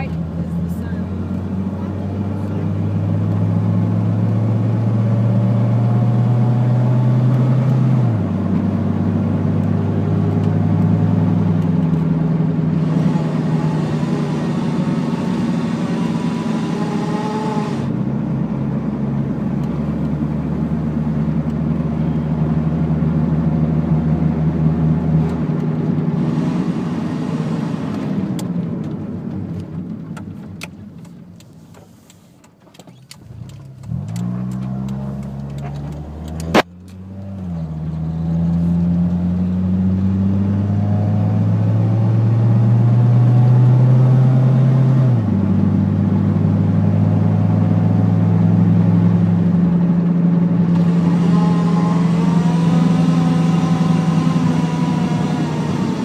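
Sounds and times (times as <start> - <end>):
car engine running: 0.0 - 56.0
sharp click: 32.1 - 37.4.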